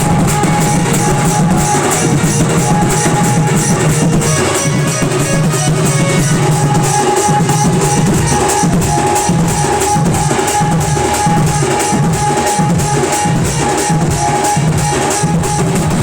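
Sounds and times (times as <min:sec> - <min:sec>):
fast dense drumming: 0:00.0 - 0:16.0
held melody note: 0:00.0 - 0:16.0
pulsing bass line: 0:00.0 - 0:16.0.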